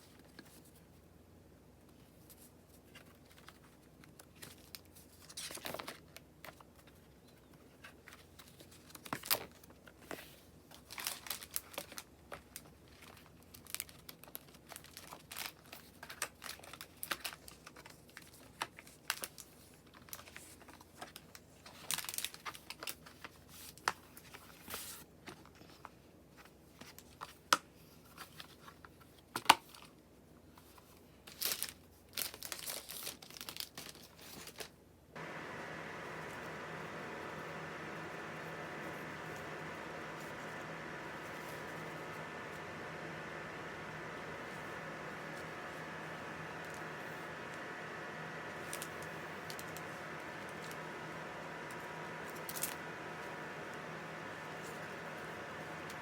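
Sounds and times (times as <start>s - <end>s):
packaging crinkling and tearing: 31.3s - 34.6s.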